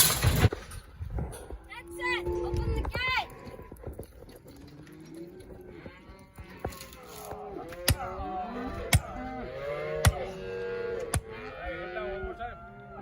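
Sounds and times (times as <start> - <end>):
cattle bawling: 4.4 - 13.0.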